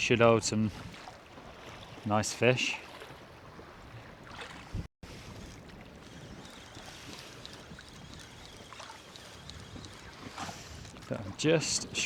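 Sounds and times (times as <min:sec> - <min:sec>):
water lapping against boat hull: 0:00.0 - 0:12.0
wind: 0:00.0 - 0:12.0
faint splashy ticks: 0:05.3 - 0:12.0.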